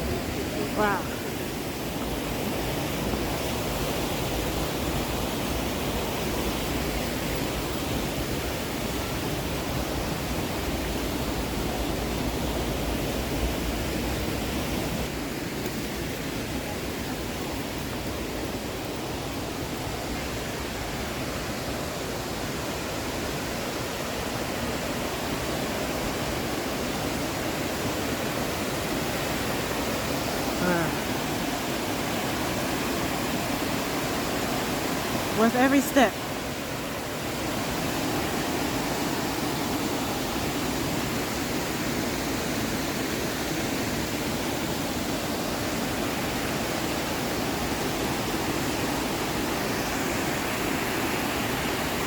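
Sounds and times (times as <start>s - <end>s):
waterfall roaring: 0.0s - 52.0s.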